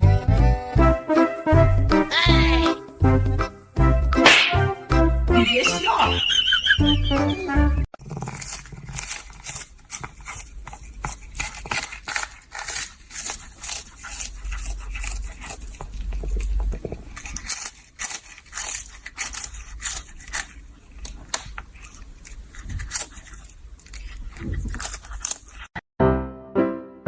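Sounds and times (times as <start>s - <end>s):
piano music: 0.0s - 7.9s, 26.0s - 27.0s
animal chewing and crunching: 8.0s - 25.8s.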